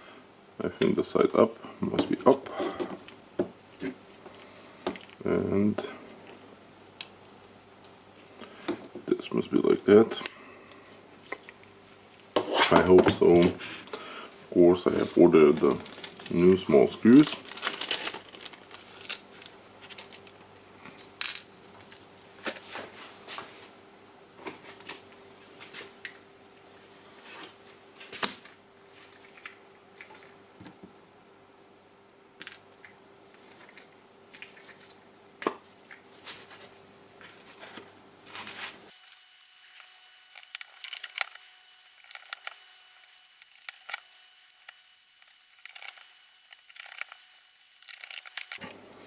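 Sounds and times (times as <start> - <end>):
plastic and metal parts clicking: 38.9 - 48.6.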